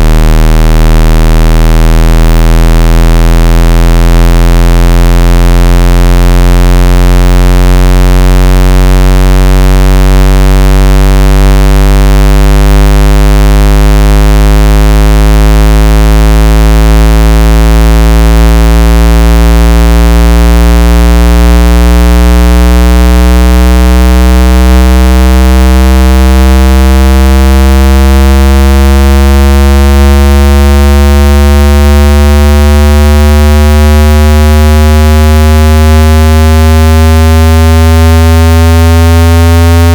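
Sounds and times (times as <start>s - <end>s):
square-wave tone sweeping upward: 0.0s - 26.6s.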